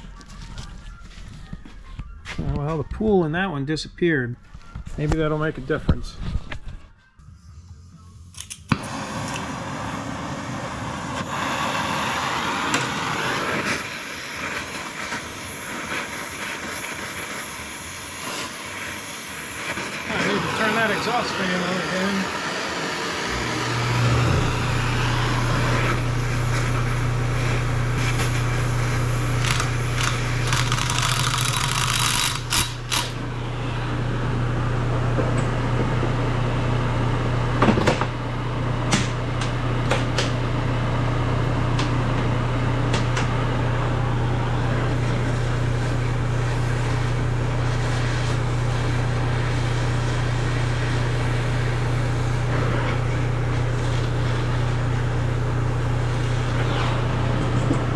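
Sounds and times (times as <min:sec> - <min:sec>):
hiss: 0:08.7 - 0:33.1
exhaust fan humming: 0:20.3 - 0:57.9.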